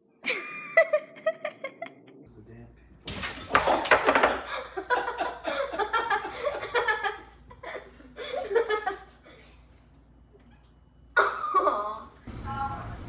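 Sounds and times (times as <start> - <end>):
person laughing: 0.2 - 2.1, 4.5 - 9.4
dishes clattering: 3.1 - 4.6.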